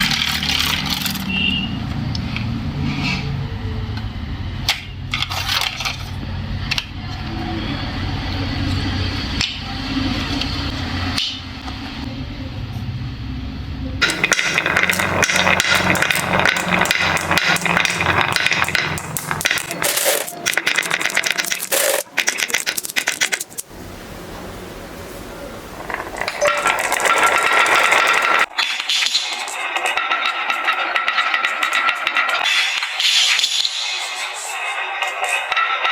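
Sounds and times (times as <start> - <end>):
marbles rattling down a track: 0.0 - 1.3, 14.0 - 23.7, 25.8 - 35.9.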